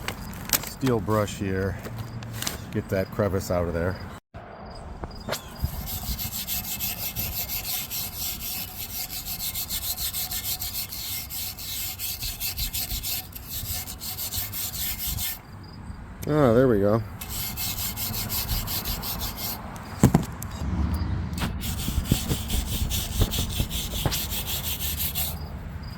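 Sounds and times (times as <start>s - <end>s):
wire brush scrubbing metal: 5.6s - 15.4s, 17.2s - 19.6s, 21.5s - 25.4s.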